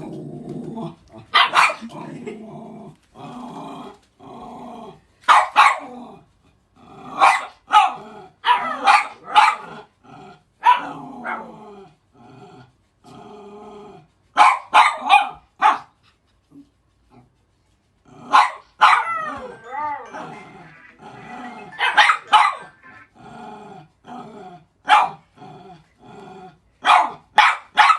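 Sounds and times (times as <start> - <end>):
dogs growling: 0.0 - 5.2, 5.8 - 8.9, 9.6 - 14.2, 18.0 - 18.5, 19.3 - 26.8
dogs barking: 1.3 - 1.9, 5.3 - 5.8, 7.2 - 9.7, 14.4 - 15.9, 18.3 - 19.7, 20.3 - 23.1, 24.9 - 25.2, 26.8 - 27.9.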